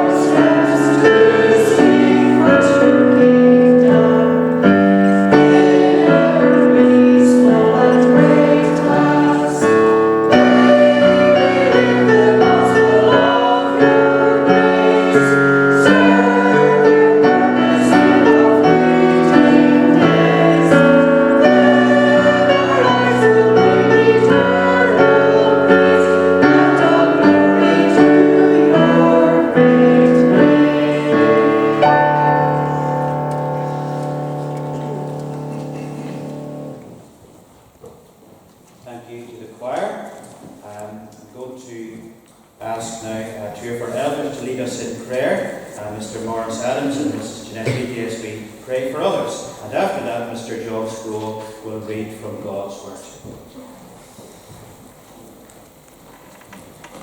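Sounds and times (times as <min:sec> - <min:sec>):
group singing a hymn: 0:00.0 - 0:37.0, 0:42.8 - 0:48.4
piano: 0:00.0 - 0:38.5.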